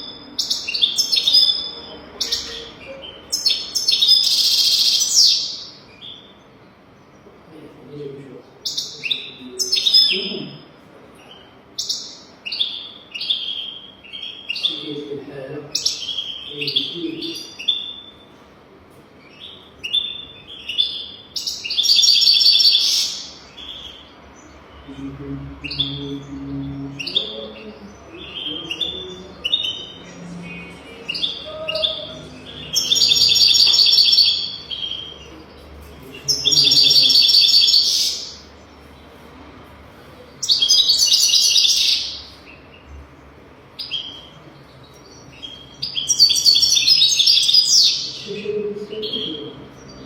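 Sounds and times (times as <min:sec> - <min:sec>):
goldfinch chirps and twittering song: 0:00.0 - 0:06.4, 0:19.3 - 0:25.0, 0:25.6 - 0:38.9, 0:40.4 - 0:42.9, 0:43.7 - 0:50.0.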